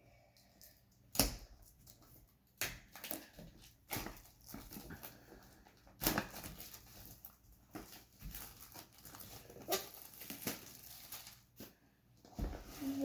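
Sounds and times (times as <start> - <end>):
packaging rustling: 3.1 - 11.8.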